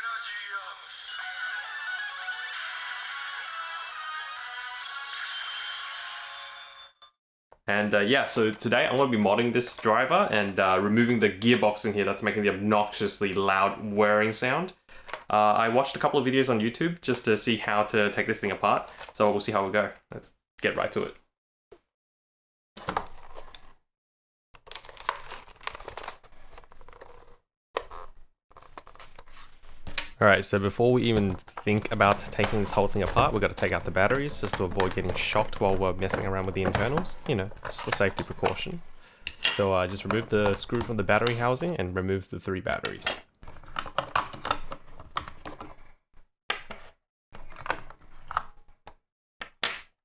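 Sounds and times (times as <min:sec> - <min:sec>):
plastic toy crinkling and rustling: 0:18.8 - 0:19.2, 0:24.6 - 0:41.8, 0:42.9 - 0:45.9.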